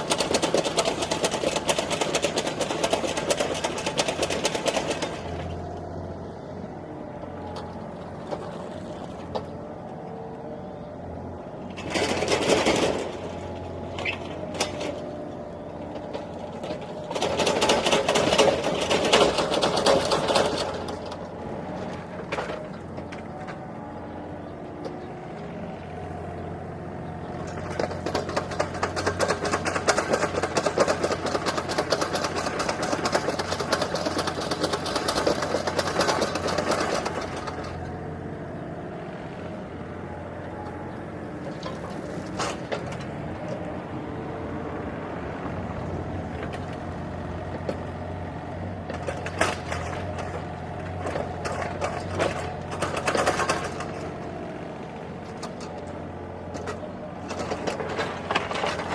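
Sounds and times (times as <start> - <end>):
diesel engine running: 0.0 - 58.9
rapid rattling: 27.4 - 37.9.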